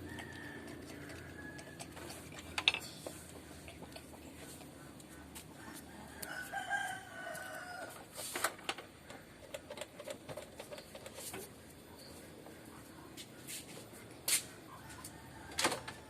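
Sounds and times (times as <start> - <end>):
rooster crowing: 0.0 - 2.0, 5.6 - 8.1.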